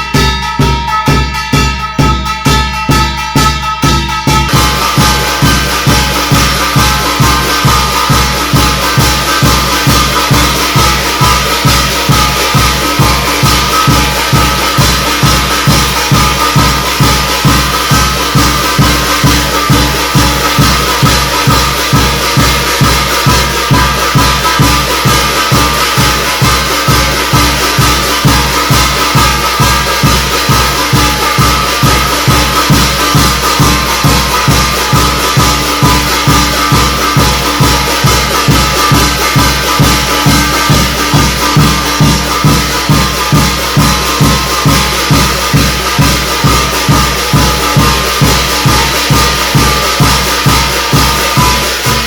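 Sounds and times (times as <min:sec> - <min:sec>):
cymbals shimmering: 0:00.0 - 0:52.0
drums beating fast: 0:00.0 - 0:52.0
steady ringing tones: 0:00.0 - 0:52.0.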